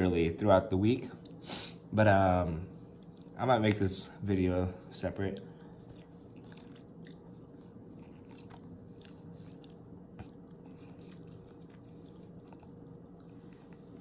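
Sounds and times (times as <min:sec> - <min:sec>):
faint steady hum: 0:00.0 - 0:14.0
person chewing noodles: 0:05.2 - 0:14.0.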